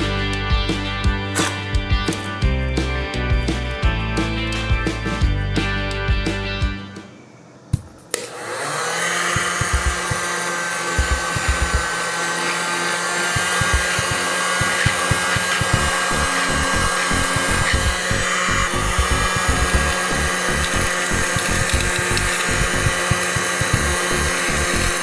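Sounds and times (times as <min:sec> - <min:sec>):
small electric motor whine: 0:07.4 - 0:25.0.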